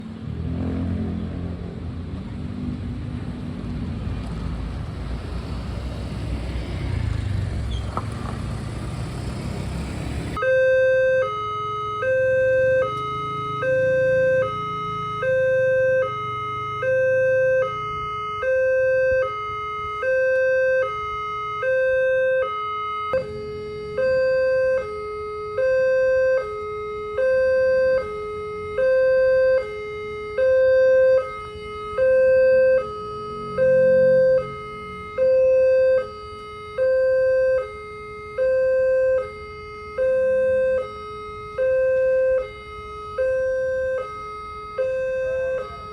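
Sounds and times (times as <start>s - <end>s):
road traffic rumble: 0.0s - 45.9s
level crossing alarm two-tone siren: 10.3s - 45.9s.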